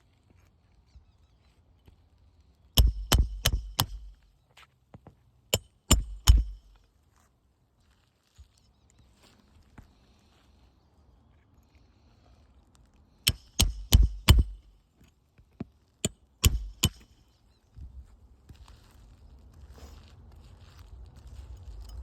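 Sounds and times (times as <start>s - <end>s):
hammer striking metal: 2.8s - 4.2s, 5.6s - 6.7s, 13.3s - 14.7s, 16.4s - 17.1s.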